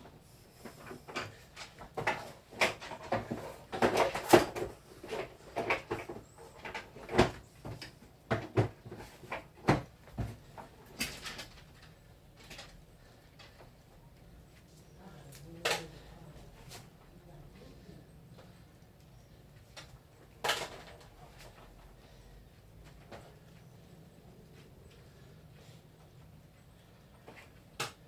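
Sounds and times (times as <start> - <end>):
plastic parts clicking and knocking: 19.6 - 21.2.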